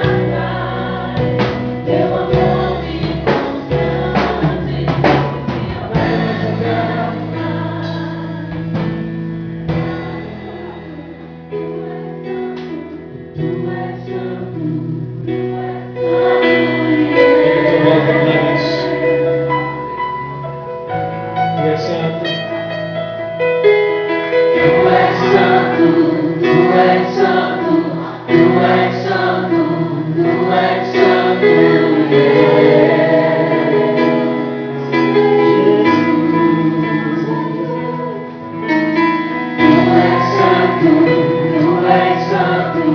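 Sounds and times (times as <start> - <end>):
worship singing: 0.0 - 19.8, 24.4 - 42.9
instrumental accompaniment: 0.0 - 42.9.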